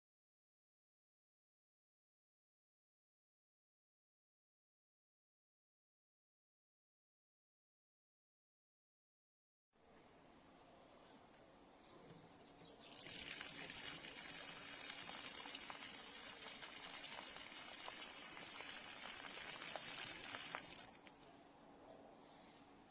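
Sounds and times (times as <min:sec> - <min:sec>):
water running from a tap: 0:12.8 - 0:21.1.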